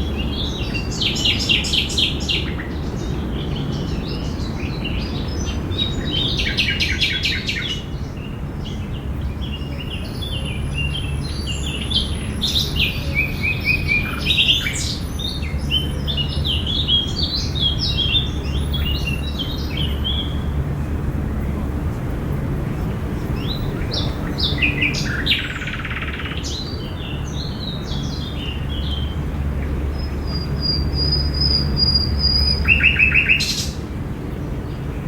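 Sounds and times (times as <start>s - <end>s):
songbirds chirping: 0.0s - 35.0s
bird trill: 29.9s - 33.8s.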